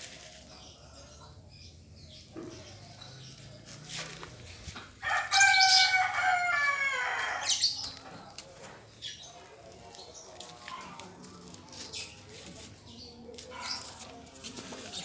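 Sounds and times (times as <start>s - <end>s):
rooster crowing: 5.0s - 7.6s.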